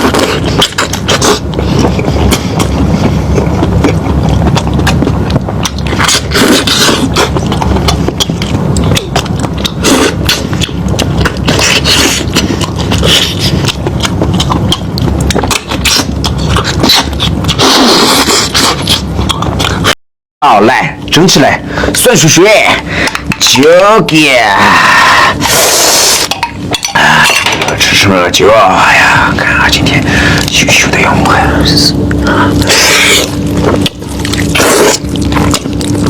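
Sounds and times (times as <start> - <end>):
chewing and mouth smacking: 0.0 - 19.9, 31.4 - 36.0.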